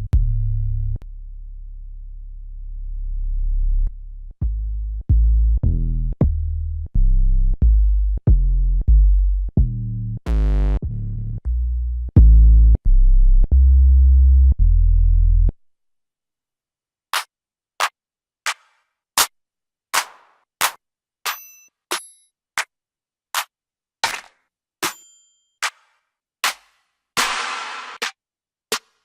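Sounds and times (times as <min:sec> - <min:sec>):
deep bass booms: 0:12.2 - 0:12.7.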